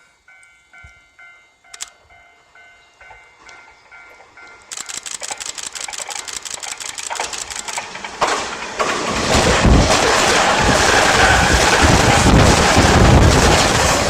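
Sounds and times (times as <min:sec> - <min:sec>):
passing train rumble: 0:00.0 - 0:14.0
rapid ticking: 0:04.6 - 0:08.1.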